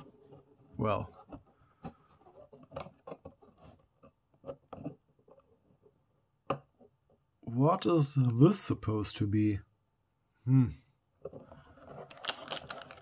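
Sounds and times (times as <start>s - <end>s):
cardboard rubbing: 0.0s - 5.9s
plastic pieces clicking: 12.0s - 13.0s.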